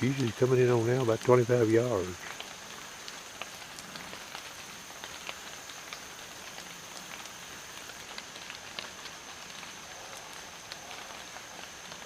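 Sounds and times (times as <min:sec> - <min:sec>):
rain pattering on leaves: 0:00.0 - 0:12.0.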